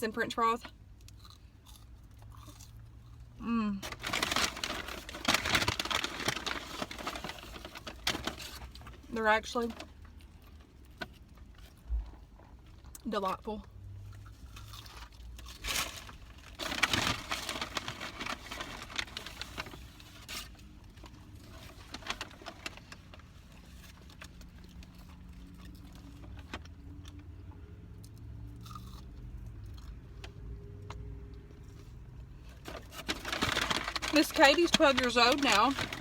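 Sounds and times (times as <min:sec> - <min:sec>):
paper wrappers crinkling: 0:03.8 - 0:09.9, 0:14.6 - 0:26.7, 0:32.5 - 0:36.0.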